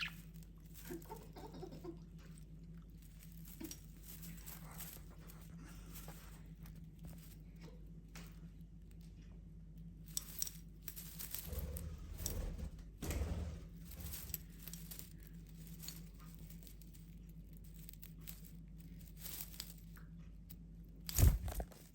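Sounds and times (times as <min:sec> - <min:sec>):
rustling of tree branches: 0:03.0 - 0:07.3, 0:21.1 - 0:21.9.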